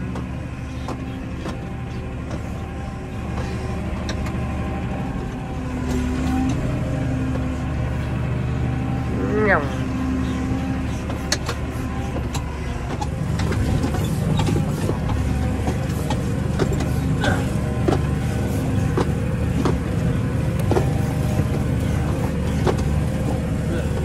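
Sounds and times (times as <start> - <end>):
tractor engine running: 0.0 - 24.0
sharp clicks and rattles: 11.0 - 24.0.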